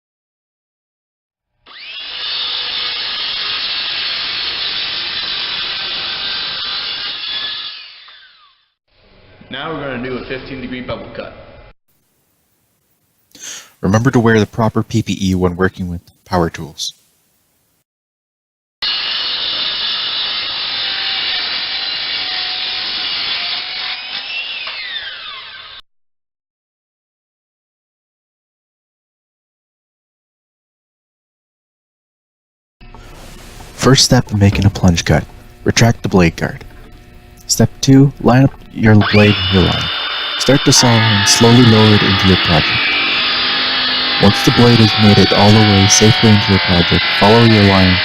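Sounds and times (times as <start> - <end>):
circular saw cutting: 1.7 - 8.8, 18.8 - 25.8, 32.8 - 48.0.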